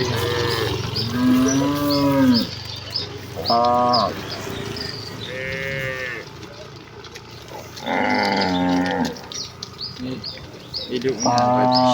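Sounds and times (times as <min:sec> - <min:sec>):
cattle mooing: 0:00.0 - 0:02.6, 0:03.4 - 0:06.4, 0:07.5 - 0:09.4, 0:11.2 - 0:11.9.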